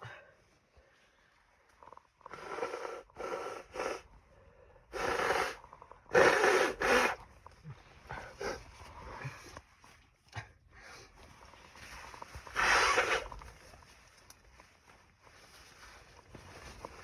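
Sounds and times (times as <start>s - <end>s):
gasping breaths: 1.9s - 9.6s.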